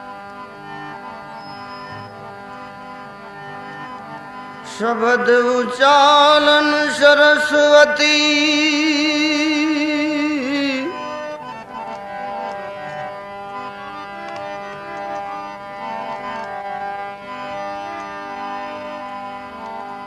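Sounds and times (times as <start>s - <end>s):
harmonium reed chords: 0.0s - 20.0s
man singing with vibrato: 4.6s - 11.3s.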